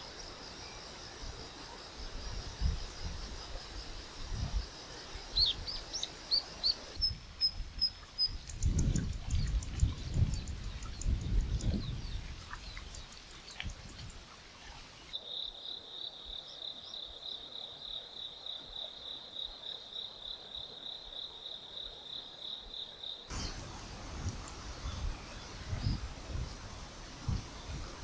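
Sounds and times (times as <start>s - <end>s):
birds chirping: 5.2s - 7.0s, 23.3s - 28.0s
insect pulsing trill: 23.3s - 28.0s.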